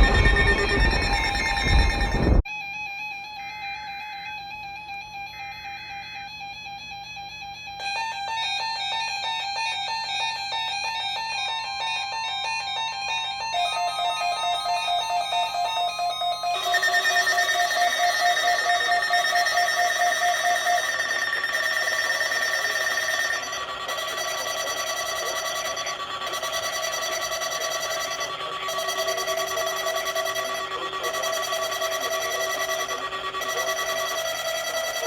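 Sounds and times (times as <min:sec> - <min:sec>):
weather radio alert beeps: 0:00.0 - 0:02.4, 0:11.4 - 0:35.0.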